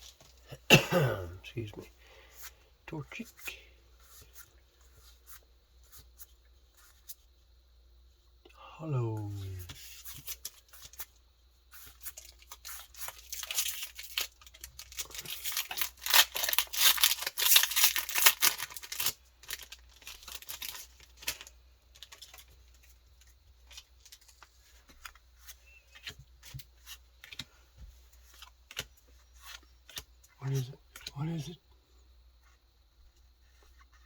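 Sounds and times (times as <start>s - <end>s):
foil pack tearing open: 12.8s - 22.3s.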